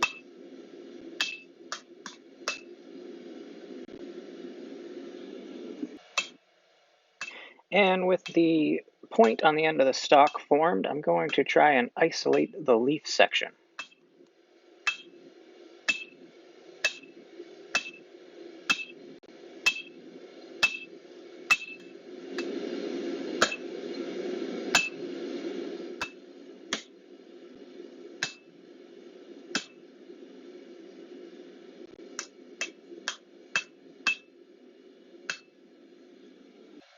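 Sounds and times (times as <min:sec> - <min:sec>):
hammer striking hot steel on anvil: 0:00.0 - 0:00.3, 0:01.2 - 0:01.9, 0:02.5 - 0:02.7, 0:06.2 - 0:06.4, 0:13.8 - 0:14.0, 0:14.9 - 0:15.2, 0:15.9 - 0:16.2, 0:16.8 - 0:18.0, 0:18.6 - 0:19.0, 0:19.6 - 0:20.0, 0:20.6 - 0:22.6, 0:23.4 - 0:23.7, 0:24.7 - 0:25.0, 0:26.0 - 0:26.9, 0:28.2 - 0:28.5, 0:29.6 - 0:29.8, 0:32.2 - 0:34.3, 0:35.3 - 0:35.5.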